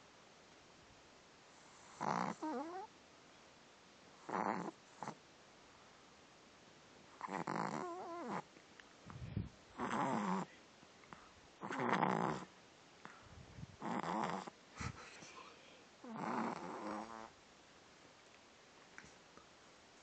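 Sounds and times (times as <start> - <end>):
puppy snoring: 1.5 - 2.9, 4.2 - 5.2, 7.1 - 8.5, 9.7 - 10.5, 11.6 - 13.2, 13.8 - 15.0, 16.0 - 17.4
puppy snorting: 1.7 - 2.9, 4.2 - 5.2, 7.2 - 8.4, 9.8 - 10.5, 11.6 - 12.5, 13.8 - 15.0, 16.0 - 17.3.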